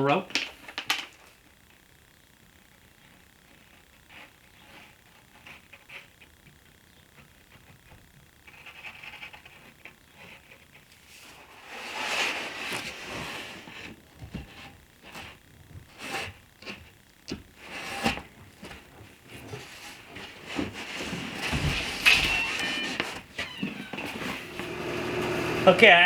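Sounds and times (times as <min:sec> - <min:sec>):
wood scraping and rubbing: 0:03.5 - 0:26.0
wooden knocks and clunks: 0:19.5 - 0:24.4.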